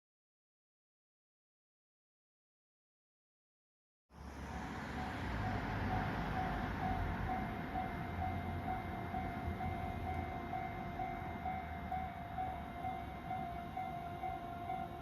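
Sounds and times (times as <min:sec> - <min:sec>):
level-crossing warning bell: 0:04.4 - 0:15.0.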